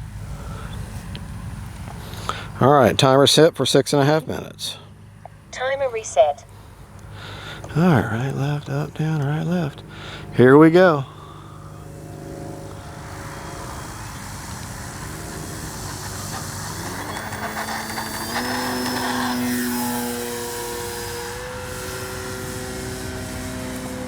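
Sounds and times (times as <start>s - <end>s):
electric motor and propeller whine: 4.9s - 24.0s.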